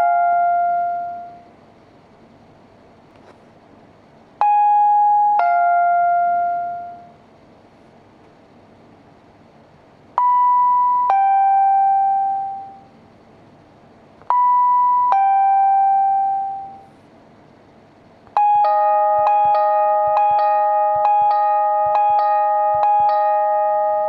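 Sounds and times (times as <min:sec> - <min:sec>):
fast alternating piano chime: 0:00.0 - 0:01.4, 0:04.4 - 0:07.2, 0:10.2 - 0:12.9, 0:14.3 - 0:16.9, 0:18.4 - 0:24.0
two-note ding-dong chime: 0:04.4 - 0:07.1, 0:10.2 - 0:12.9, 0:14.3 - 0:16.8, 0:18.4 - 0:24.0.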